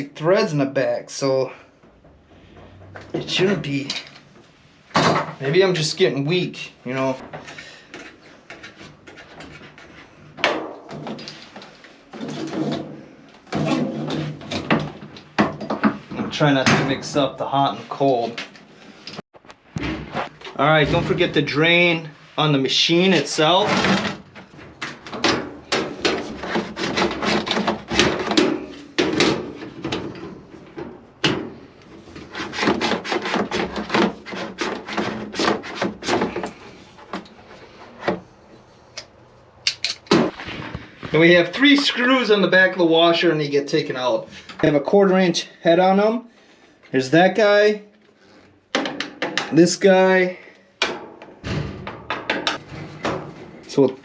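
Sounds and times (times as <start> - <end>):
knocking and clunking of washing machine parts: 4.9 - 5.4, 10.4 - 17.2, 23.6 - 37.3, 48.7 - 49.6, 50.8 - 53.8
scraping and rubbing: 6.9 - 42.4, 52.5 - 54.0.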